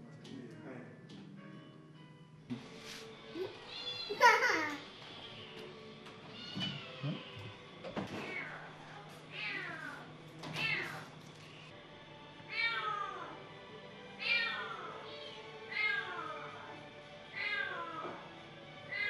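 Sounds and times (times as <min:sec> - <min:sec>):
cats meowing: 0:03.4 - 0:11.1, 0:12.5 - 0:13.4, 0:14.2 - 0:19.0.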